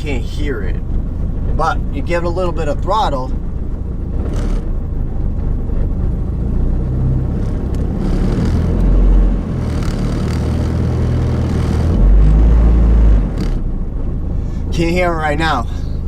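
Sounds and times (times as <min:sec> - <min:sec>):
car engine revving lightly: 0:02.8 - 0:14.8.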